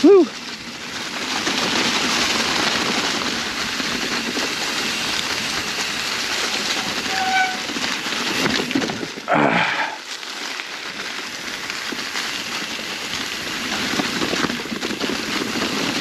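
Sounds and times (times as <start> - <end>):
mountain bike rattling over rocks: 0.0 - 16.0
high squeal: 6.8 - 7.7.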